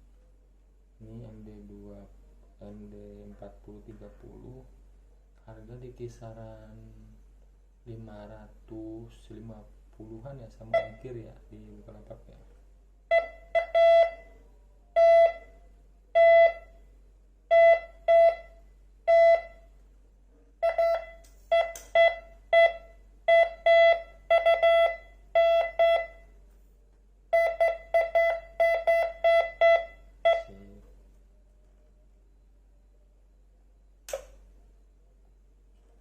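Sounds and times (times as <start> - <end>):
metal detector beeping: 27.4 - 30.7.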